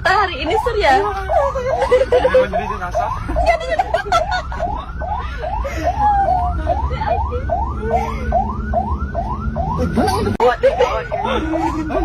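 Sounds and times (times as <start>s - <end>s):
ambulance siren yelping: 0.0s - 12.0s.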